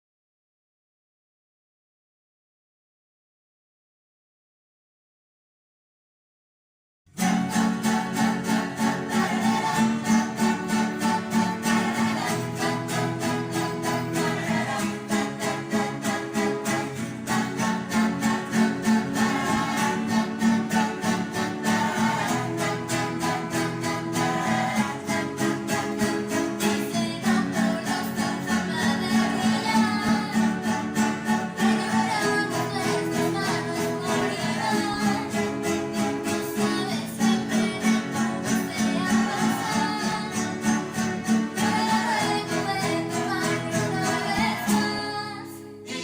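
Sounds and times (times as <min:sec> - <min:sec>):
strummed acoustic guitars: 0:07.1 - 0:46.0.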